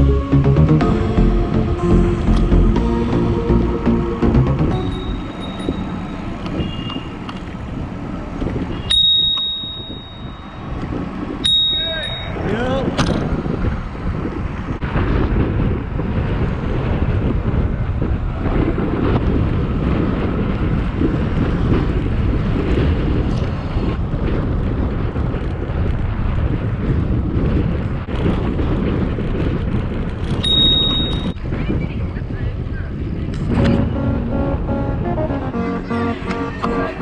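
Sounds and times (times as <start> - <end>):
wind buffeting microphone: 4.9 - 33.9.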